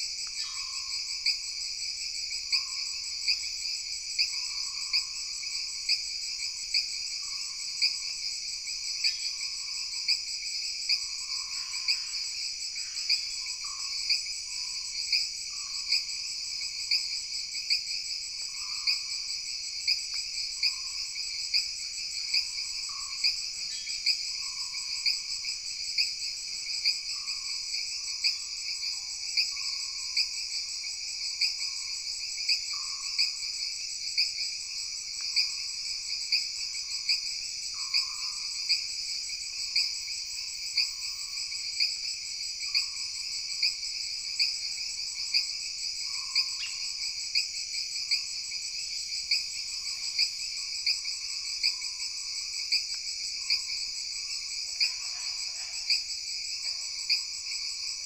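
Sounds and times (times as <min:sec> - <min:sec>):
insects buzzing and trilling: 0:00.0 - 0:58.0.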